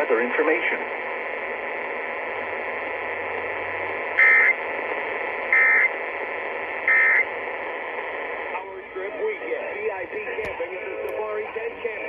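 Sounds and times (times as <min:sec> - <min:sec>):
radio static hiss: 0:00.0 - 0:12.0
warbling data bursts: 0:06.9 - 0:07.3.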